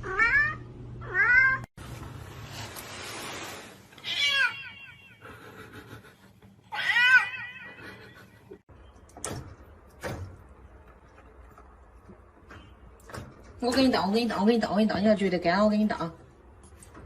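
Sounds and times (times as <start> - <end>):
cat meowing: 0.0 - 1.7, 4.0 - 5.2, 6.7 - 7.8.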